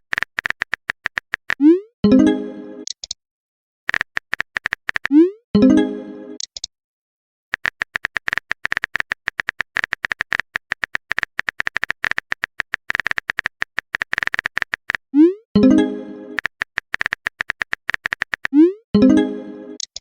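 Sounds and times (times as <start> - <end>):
phone keyboard typing clicks: 0.0 - 1.7, 2.8 - 3.2, 3.9 - 5.2, 6.4 - 6.7, 7.6 - 15.1, 16.4 - 18.6, 19.8 - 20.0.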